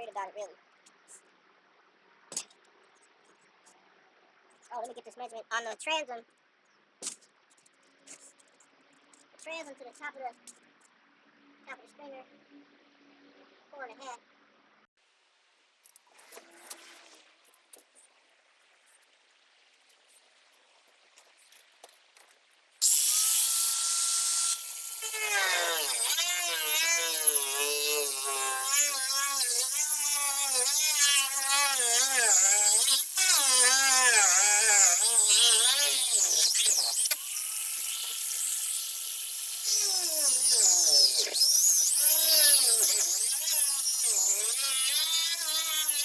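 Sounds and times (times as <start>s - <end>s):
power tool cutting wood: 22.8s - 46.0s.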